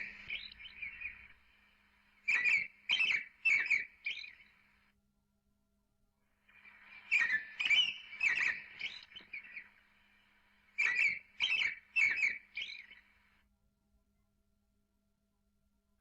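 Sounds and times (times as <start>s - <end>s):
songbird chirping: 0.0s - 4.8s, 6.5s - 13.4s.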